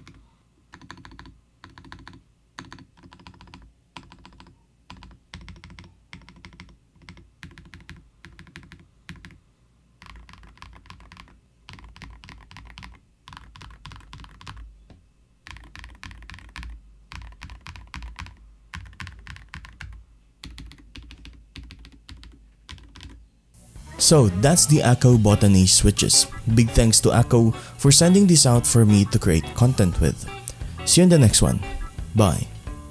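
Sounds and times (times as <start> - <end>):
mechanical keyboard typing: 0.0 - 9.4, 10.0 - 14.6, 15.4 - 23.2.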